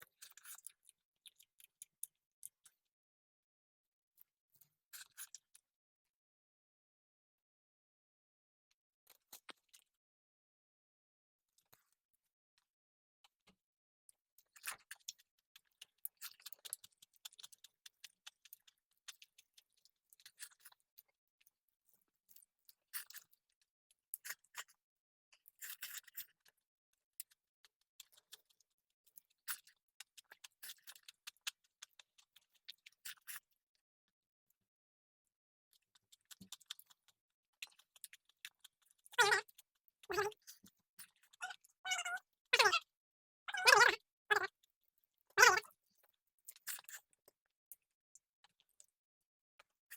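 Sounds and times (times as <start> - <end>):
chewing and crunching food: 0.0 - 3.1, 4.2 - 5.9, 8.7 - 10.2, 11.4 - 49.9
wet mouth clicks: 36.1 - 42.8, 46.5 - 47.4.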